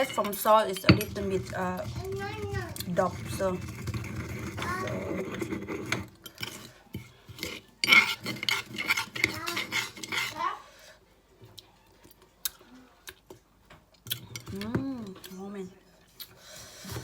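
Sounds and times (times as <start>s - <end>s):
utensils clinking against bowl: 0.0s - 10.5s, 14.0s - 15.5s.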